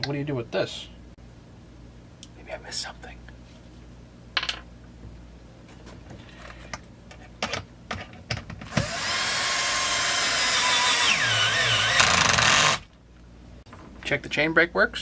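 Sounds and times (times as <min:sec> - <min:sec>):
power drill running: 0:08.7 - 0:12.8.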